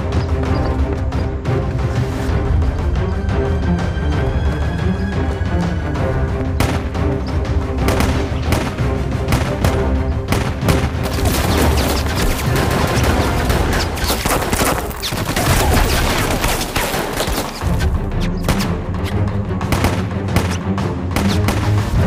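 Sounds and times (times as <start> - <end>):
dramatic orchestral music: 0.0 - 22.0
rapid gunfire: 7.7 - 18.8, 19.6 - 22.0.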